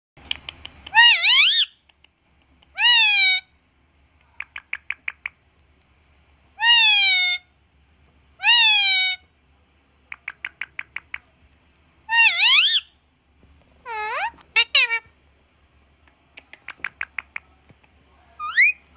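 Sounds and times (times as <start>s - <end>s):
parrot mimicking a call: 0.9s - 1.8s, 2.8s - 3.5s, 6.6s - 7.5s, 8.4s - 9.3s, 12.1s - 12.9s, 13.8s - 15.1s.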